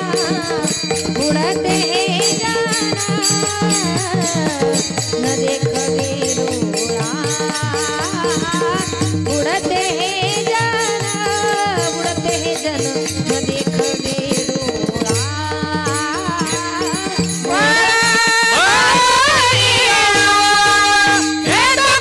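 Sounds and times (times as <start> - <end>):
group singing in chorus: 17.5 - 22.0.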